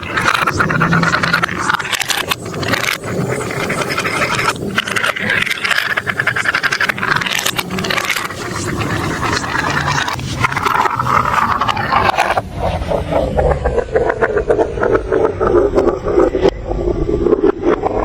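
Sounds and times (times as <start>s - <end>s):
marbles rattling down plastic track: 0.0s - 12.4s.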